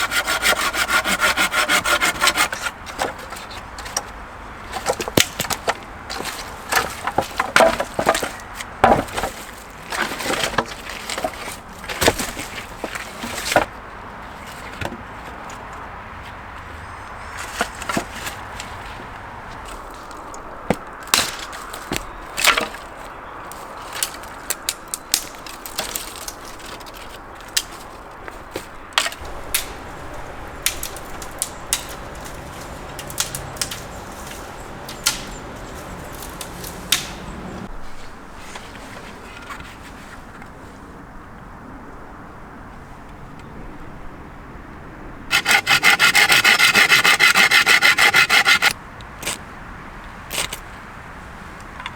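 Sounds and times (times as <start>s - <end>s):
sharp wooden knocks and cracks: 0.0s - 13.7s, 20.0s - 37.7s, 45.3s - 49.4s.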